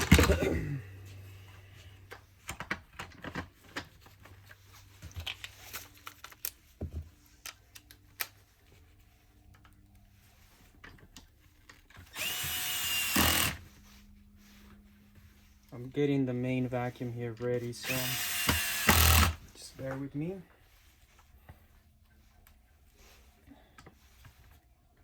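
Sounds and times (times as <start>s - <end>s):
clicks and knocks of handled parts: 2.1s - 8.4s
cordless screwdriver running: 12.1s - 13.7s, 17.8s - 19.4s.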